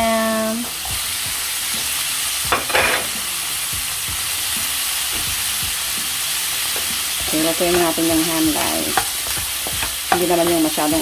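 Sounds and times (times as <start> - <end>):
garlic and onion sizzling in oil: 0.0 - 11.0
stirring taps in frying pan: 6.5 - 11.0.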